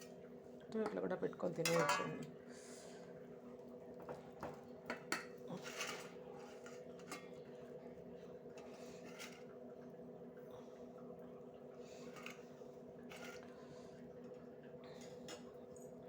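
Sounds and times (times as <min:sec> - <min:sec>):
utensils clinking against dishes: 0:01.6 - 0:02.3.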